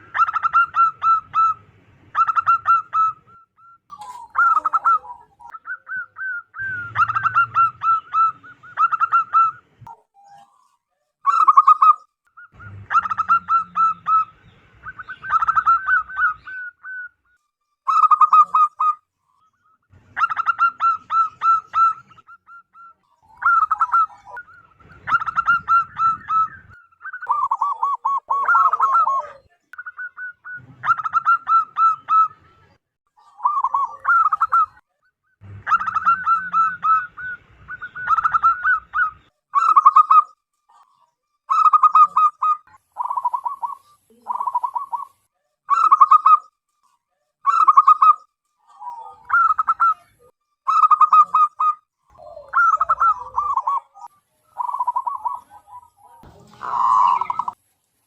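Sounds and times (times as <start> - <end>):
doves cooing: 0.0 - 34.8, 35.4 - 46.5, 47.4 - 57.7.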